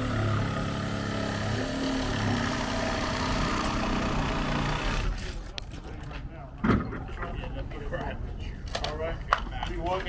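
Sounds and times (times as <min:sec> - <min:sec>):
engine running: 0:00.0 - 0:05.2.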